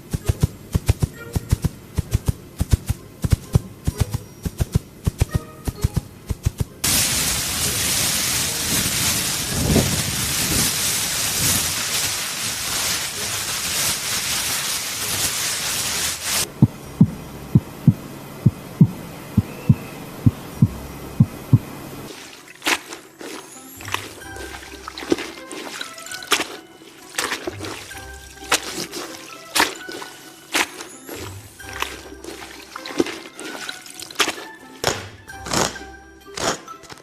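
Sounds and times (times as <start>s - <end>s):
heartbeat sound effect: 0.0s - 6.8s, 16.5s - 21.7s
loud steady hiss: 0.0s - 33.3s
low thumps: 16.5s - 21.7s.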